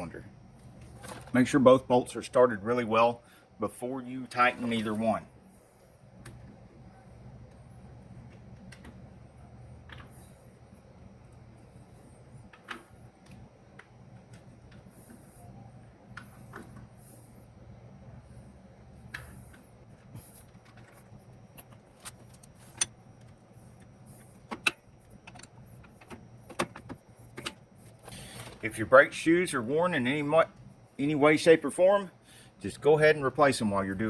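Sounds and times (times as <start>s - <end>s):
faint low hum: 0.0s - 34.0s.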